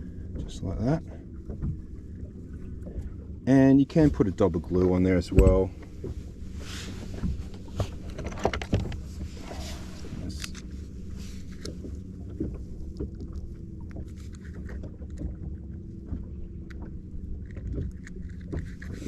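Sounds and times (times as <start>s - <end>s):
faint steady hum: 0.0s - 19.0s
water washing against hull: 0.0s - 19.0s
clicks and knocks from gear: 7.2s - 9.0s, 10.2s - 10.7s, 16.1s - 19.0s.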